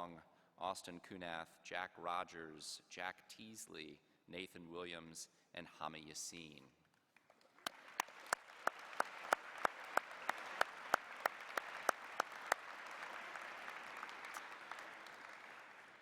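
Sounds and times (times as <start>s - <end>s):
person clapping loudly nearby: 7.2s - 16.0s
audience applauding: 7.3s - 16.0s.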